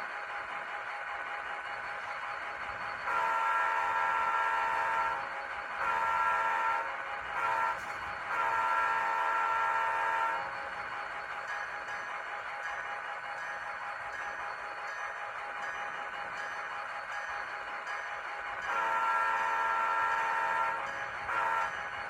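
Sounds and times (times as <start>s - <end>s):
locomotive horn blasts: 3.0s - 10.5s, 18.7s - 21.9s.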